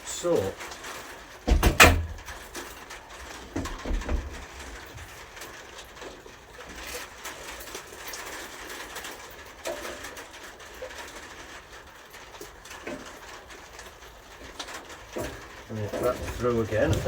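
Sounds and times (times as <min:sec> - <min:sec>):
metal parts clicking and knocking: 0:00.7 - 0:02.7.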